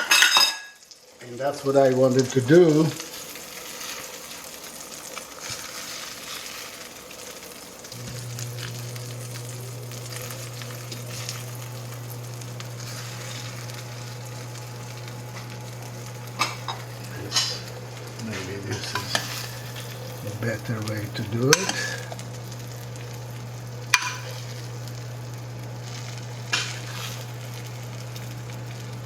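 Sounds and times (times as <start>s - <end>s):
food sizzling in pan: 0.0s - 29.0s
steady low hum: 7.8s - 29.0s.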